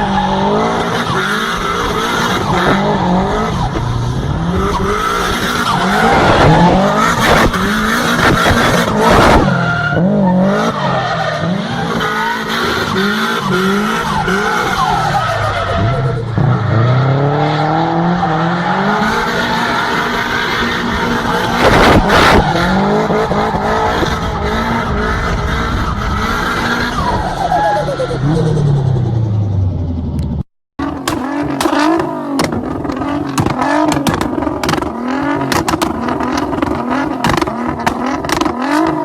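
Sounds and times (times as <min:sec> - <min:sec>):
car engine revving: 0:00.0 - 0:27.0, 0:30.8 - 0:39.0
tyres skidding and squealing: 0:00.0 - 0:39.0
sharp bangs: 0:30.8 - 0:39.0.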